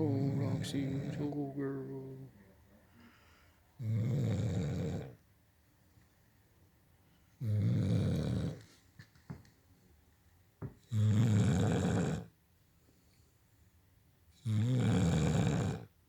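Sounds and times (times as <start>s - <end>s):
dog snoring: 0.0s - 2.2s, 3.8s - 5.2s, 7.4s - 8.7s, 10.9s - 12.3s, 14.4s - 15.9s.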